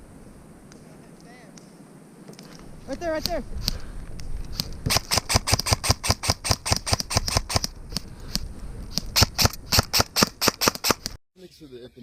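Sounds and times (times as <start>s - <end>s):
airsoft guns firing: 4.8s - 7.7s, 9.1s - 11.2s.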